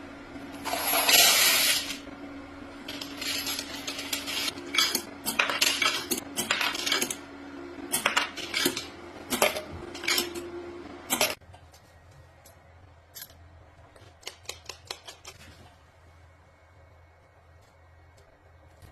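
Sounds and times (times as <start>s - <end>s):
steady hum: 0.0s - 14.0s.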